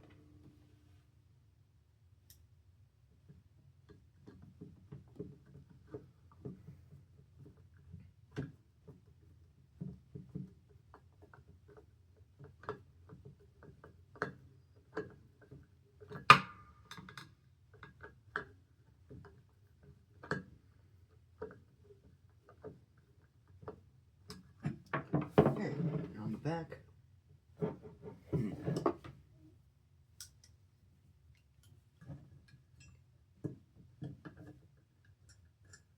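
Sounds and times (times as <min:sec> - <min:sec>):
small metal clicks and taps: 0:31.4 - 0:35.9.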